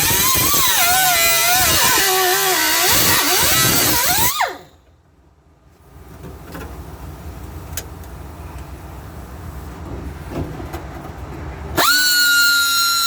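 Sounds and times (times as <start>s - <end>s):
power tool running: 0.0s - 4.8s, 11.8s - 13.0s.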